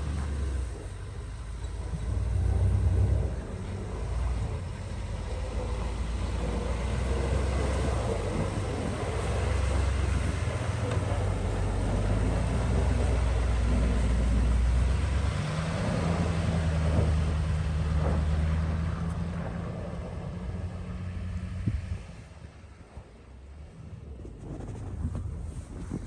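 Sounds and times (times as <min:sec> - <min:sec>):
broad rushing noise: 0:00.0 - 0:26.0
vehicle engine running: 0:00.0 - 0:26.0.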